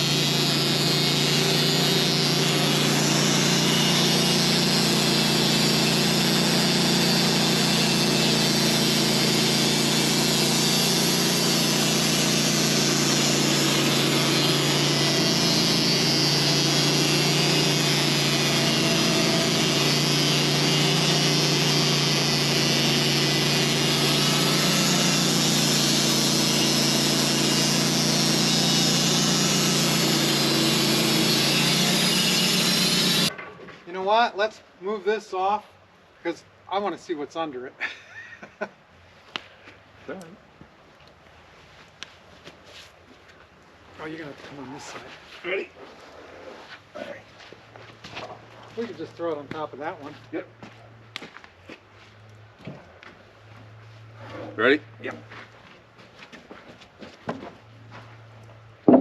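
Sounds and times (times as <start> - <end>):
saw blade hissing through wood: 0.0 - 33.3
sawmill engine drone: 0.0 - 33.3.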